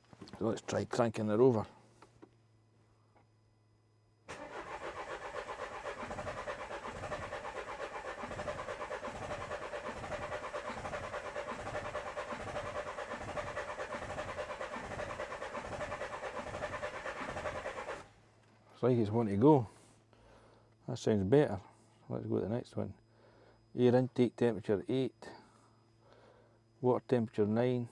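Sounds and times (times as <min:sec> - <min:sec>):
starter motor cranking diesel engine: 0:04.3 - 0:18.1.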